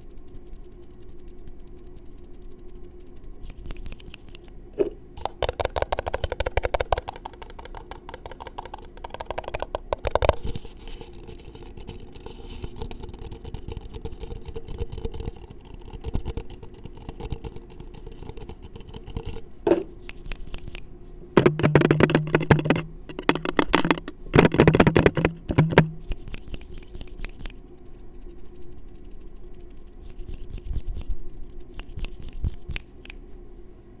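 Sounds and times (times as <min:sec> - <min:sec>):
fingertips tapping on microphone: 0:03.4 - 0:20.8, 0:21.4 - 0:27.5.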